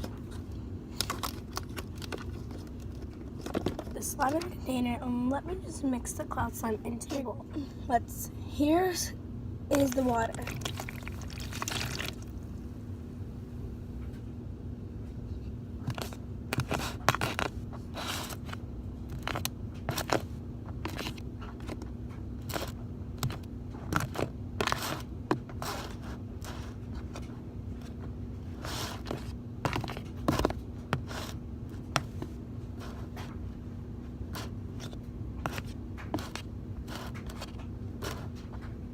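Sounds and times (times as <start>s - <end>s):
slime scraping and crunching: 9.7s - 12.3s, 22.4s - 26.7s.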